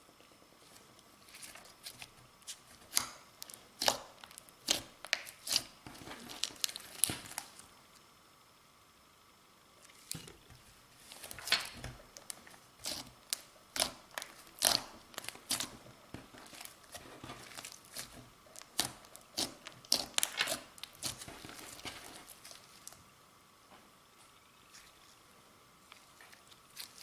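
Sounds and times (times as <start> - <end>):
slime squished by hand: 1.3 - 7.6, 9.8 - 23.0.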